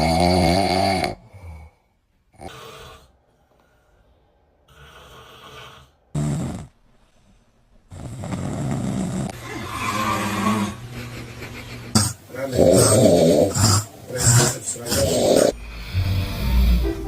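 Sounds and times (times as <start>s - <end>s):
man snoring: 0.0s - 3.2s, 4.7s - 6.8s, 7.9s - 10.8s, 11.9s - 17.0s
loud snort: 4.7s - 6.8s, 7.9s - 10.8s, 11.9s - 16.8s.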